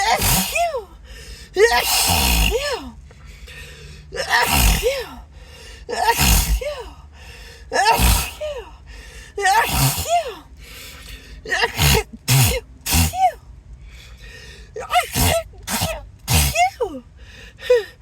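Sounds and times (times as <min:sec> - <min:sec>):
person sneezing: 0:00.0 - 0:00.9, 0:01.6 - 0:03.0, 0:04.2 - 0:05.2, 0:05.9 - 0:07.0, 0:07.8 - 0:08.7, 0:09.4 - 0:10.4, 0:11.1 - 0:13.4, 0:14.8 - 0:17.0.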